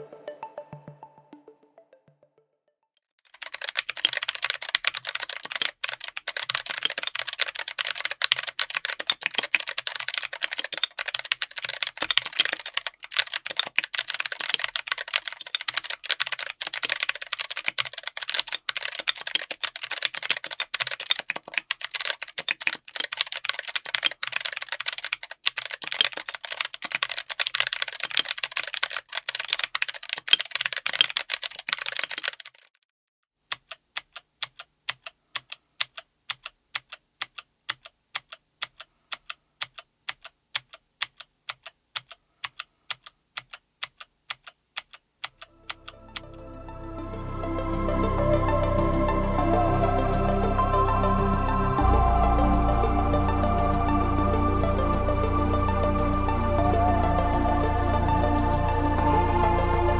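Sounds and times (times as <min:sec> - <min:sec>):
clicky mechanical keyboard typing: 0:03.3 - 0:32.8, 0:33.5 - 0:46.3.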